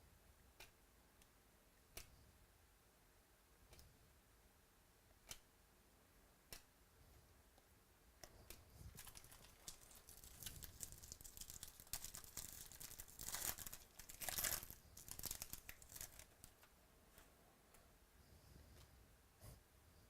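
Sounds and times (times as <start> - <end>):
foil wrapper tearing and crinkling: 8.9 - 16.5.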